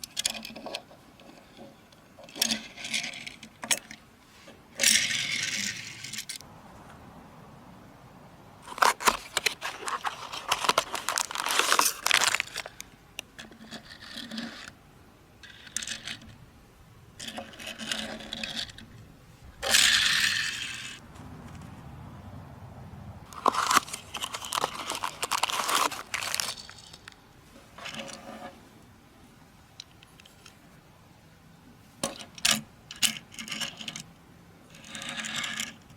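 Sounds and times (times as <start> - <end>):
packaging crinkling and tearing: 8.6 - 12.9, 23.3 - 27.2.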